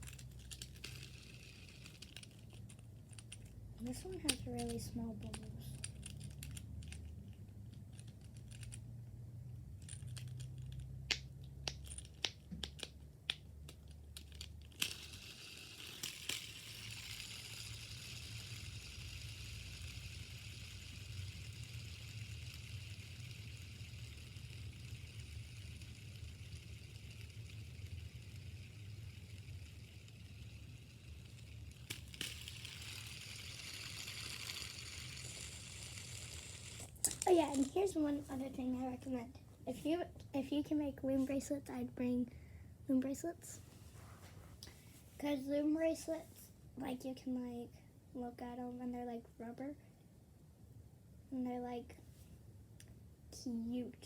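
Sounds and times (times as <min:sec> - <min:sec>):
soft crackly hiss: 0:13.6 - 0:42.0.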